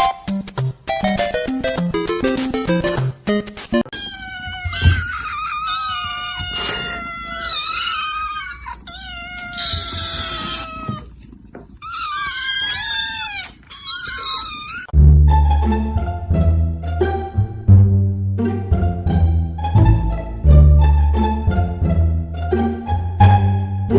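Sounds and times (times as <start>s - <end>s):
cat yowling: 3.9s - 11.1s, 11.8s - 14.9s.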